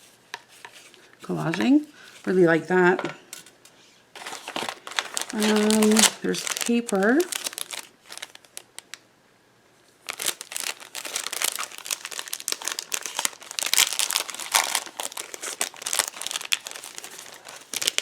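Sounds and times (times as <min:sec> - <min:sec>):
paper sheets rustling: 0:04.2 - 0:08.7, 0:10.1 - 0:18.0.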